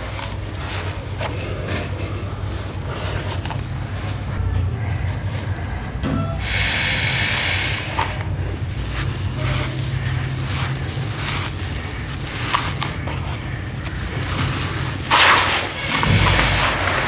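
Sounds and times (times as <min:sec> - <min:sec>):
loud crunch: 0:06.4 - 0:17.0
sawdust and sand crumbling into water: 0:06.4 - 0:17.0.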